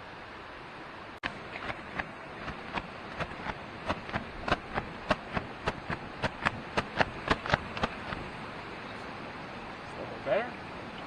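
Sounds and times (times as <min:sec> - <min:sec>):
creek water rushing: 0:00.0 - 0:11.0
sharp knocks: 0:01.2 - 0:08.3.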